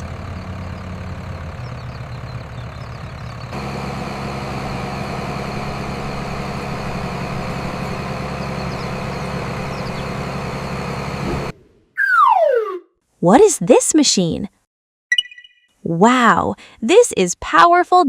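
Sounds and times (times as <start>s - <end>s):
tractor engine idling: 0.0s - 12.3s.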